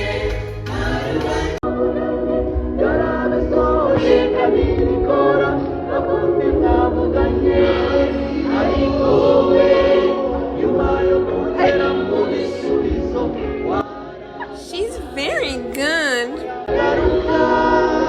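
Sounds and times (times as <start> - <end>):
church choir singing: 0.0 - 18.0.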